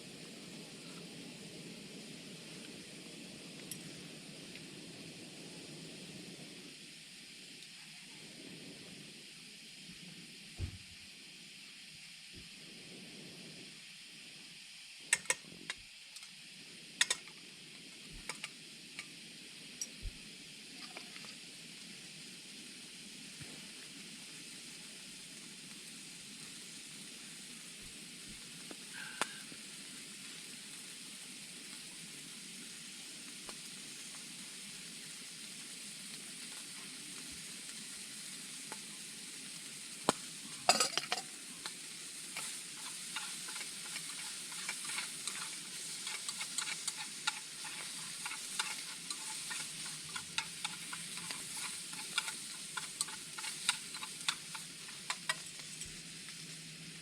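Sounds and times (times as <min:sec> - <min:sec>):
food sizzling in frying pan: 0:00.0 - 0:57.0
utensil clicks and taps: 0:42.4 - 0:55.9.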